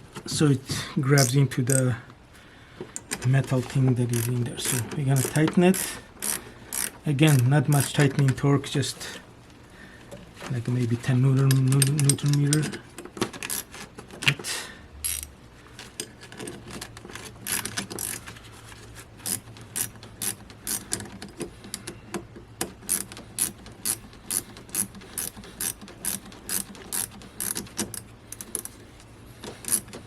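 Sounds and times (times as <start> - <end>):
ratchet wrench clicking: 4.2 - 8.1, 13.4 - 13.7, 15.0 - 15.3, 17.4 - 18.2, 19.2 - 21.1, 22.6 - 28.7, 29.4 - 30.0.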